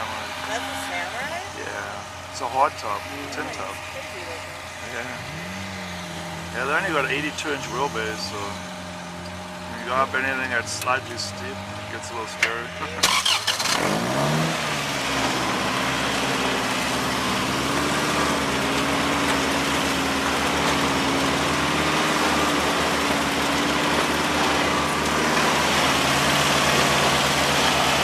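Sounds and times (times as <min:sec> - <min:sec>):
vehicle engine idling low: 0:00.0 - 0:28.0.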